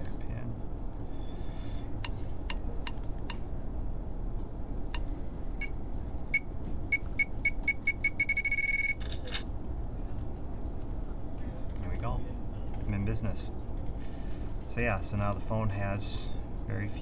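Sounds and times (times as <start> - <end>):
phone keypad beeping: 5.6 - 9.1.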